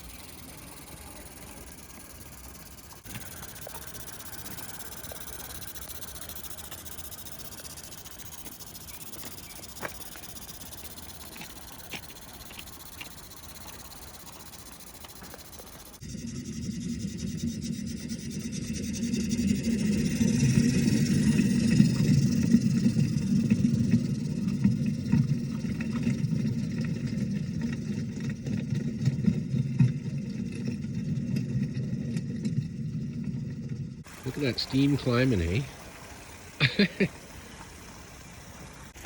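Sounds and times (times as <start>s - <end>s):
faint steam hiss: 0.0s - 16.0s, 34.0s - 39.0s
steam locomotive chuffing: 0.0s - 29.5s, 34.0s - 39.0s.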